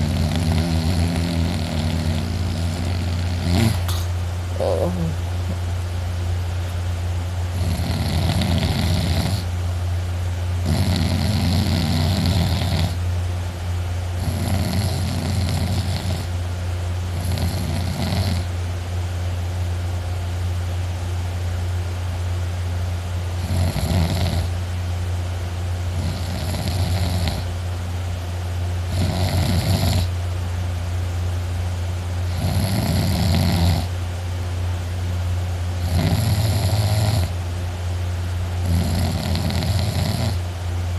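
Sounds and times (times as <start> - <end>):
person snoring loudly: 0.0 - 5.2, 7.6 - 9.5, 10.6 - 13.0, 14.2 - 16.3, 17.1 - 18.5, 23.4 - 24.5, 25.9 - 27.5, 28.9 - 30.1, 32.3 - 33.9, 35.8 - 37.3, 38.6 - 40.4
steady low hum: 0.0 - 40.9.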